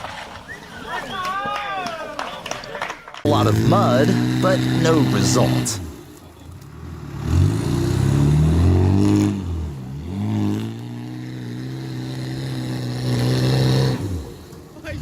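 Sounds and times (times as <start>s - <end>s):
off-road vehicle engine revving: 3.2s - 15.0s.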